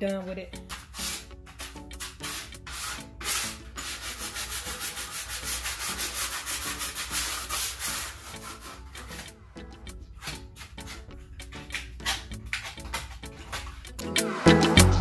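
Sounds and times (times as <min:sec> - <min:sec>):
sandpaper rubbing on wood: 0:00.7 - 0:09.3, 0:11.7 - 0:13.8.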